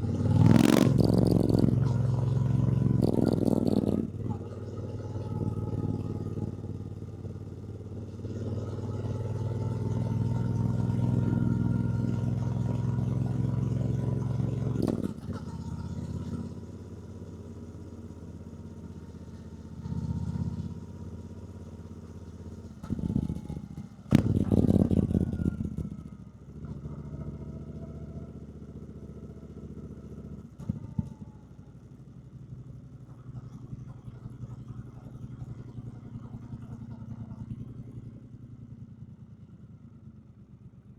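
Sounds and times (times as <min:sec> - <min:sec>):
loud rough noise: 0:00.0 - 0:02.0
motorcycle engine: 0:00.0 - 0:40.7.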